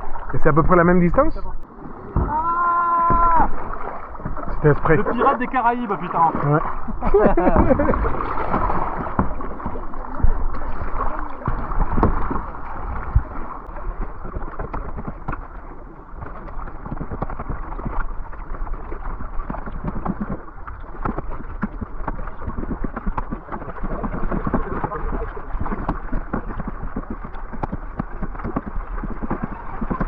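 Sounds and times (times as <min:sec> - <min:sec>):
paddle splashing water: 0:00.0 - 0:30.0
wind on microphone: 0:06.6 - 0:30.0.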